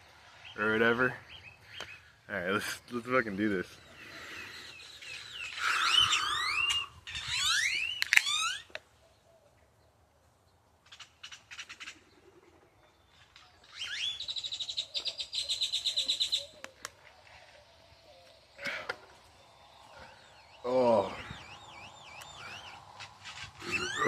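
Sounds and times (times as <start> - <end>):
bird singing: 0.0 - 24.0.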